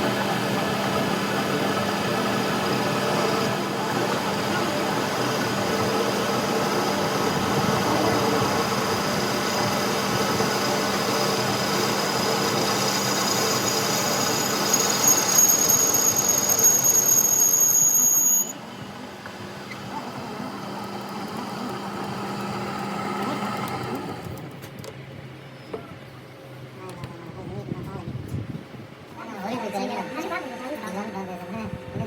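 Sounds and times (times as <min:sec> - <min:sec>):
machining noise on steel: 0:00.1 - 0:18.7
high-pitched squeal: 0:12.9 - 0:18.5.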